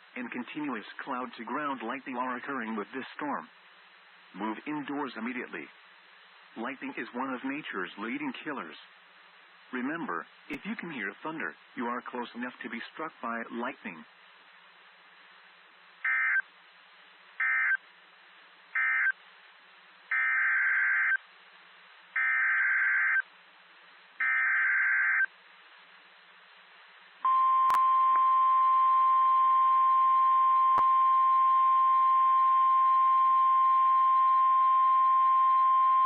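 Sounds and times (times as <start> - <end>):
radio static hiss: 0.0 - 27.3.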